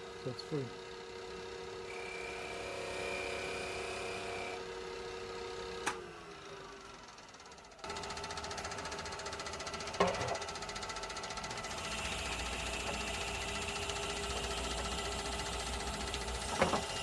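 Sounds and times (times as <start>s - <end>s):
wood lathe running: 1.1s - 4.7s, 6.8s - 17.0s
drill boring into wood: 11.5s - 17.0s
knock: 16.5s - 16.8s.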